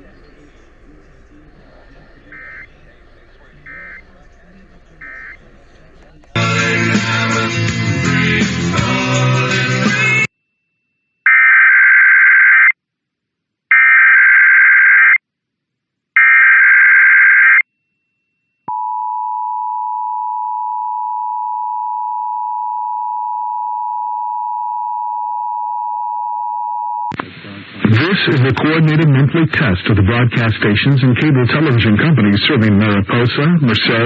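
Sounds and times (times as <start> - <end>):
two-tone attention signal: 0.0 - 7.0
digital header data tones: 0.0 - 7.3.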